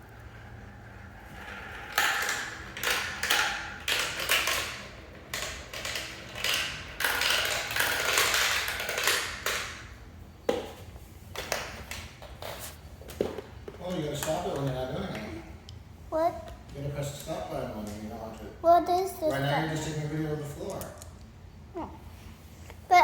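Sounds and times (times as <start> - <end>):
marbles rolling on a track: 0.0 - 10.0.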